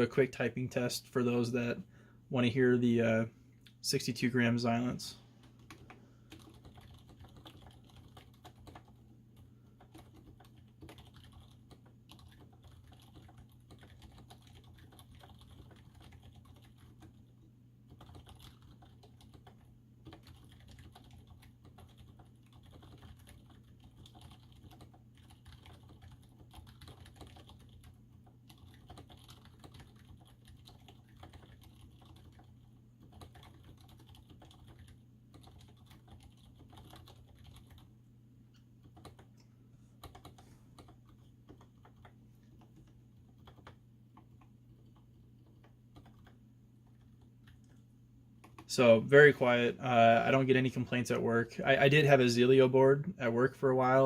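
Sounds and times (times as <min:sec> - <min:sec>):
soft muffled keyboard keystrokes: 0:05.4 - 0:17.3, 0:17.9 - 0:37.9, 0:38.5 - 0:48.7.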